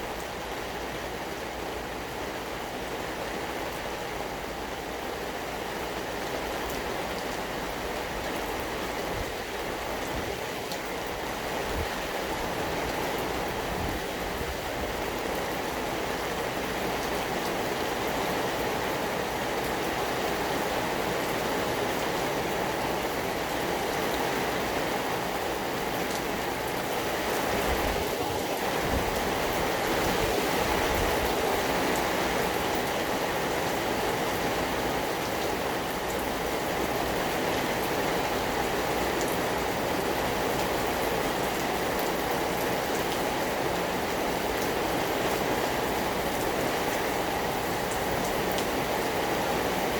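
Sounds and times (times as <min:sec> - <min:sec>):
steady rain falling: 0:00.0 - 0:49.9.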